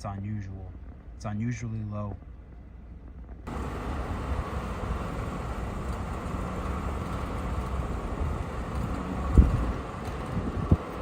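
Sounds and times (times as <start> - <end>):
engine running: 2.2 - 11.0.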